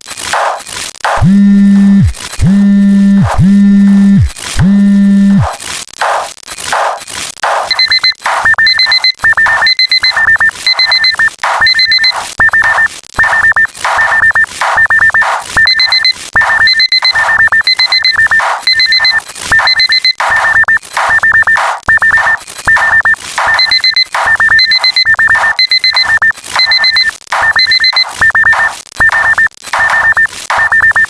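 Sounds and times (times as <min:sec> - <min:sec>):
electronic alarm beeps: 0:01.2 - 0:05.5, 0:07.5 - 0:31.0.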